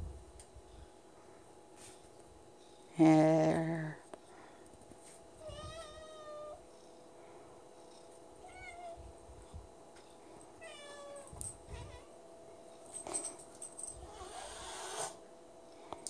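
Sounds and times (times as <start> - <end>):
cat meowing: 5.4 - 6.6, 10.6 - 12.1.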